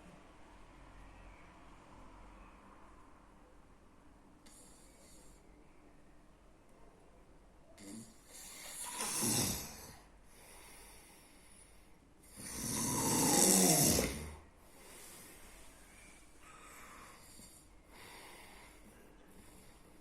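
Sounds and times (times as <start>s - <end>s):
quiet breathing: 4.4s - 6.1s, 7.6s - 20.0s
person snoring loudly: 7.8s - 10.0s, 12.3s - 14.4s.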